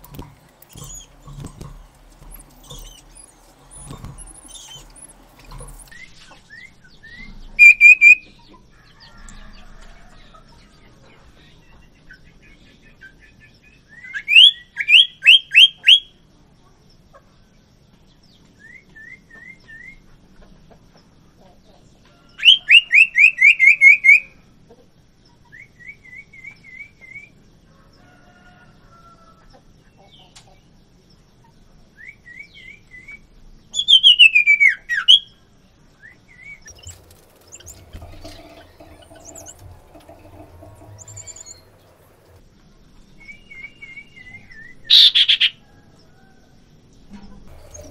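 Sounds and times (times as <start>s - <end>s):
soft bird chirps: 0.0s - 8.6s, 36.0s - 42.4s, 47.5s - 47.9s
bird whistling rapid notes: 0.6s - 6.1s, 7.2s - 8.2s, 36.6s - 42.3s.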